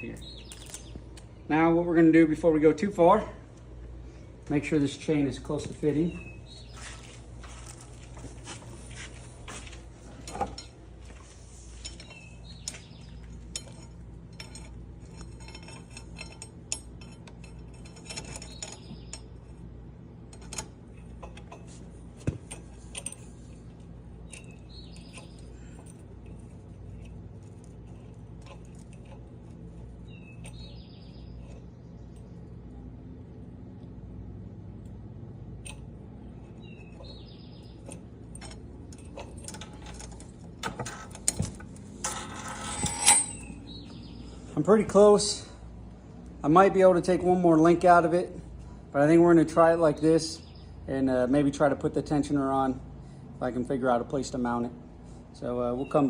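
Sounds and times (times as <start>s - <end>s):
bird chirping: 0.0s - 1.4s, 5.6s - 7.2s, 11.8s - 13.4s, 18.2s - 19.4s, 24.2s - 26.0s, 29.9s - 32.7s, 36.2s - 38.3s, 43.2s - 44.6s, 50.2s - 50.8s
metal chain clinking and rattling: 10.0s - 19.6s, 20.3s - 32.5s, 35.6s - 44.2s.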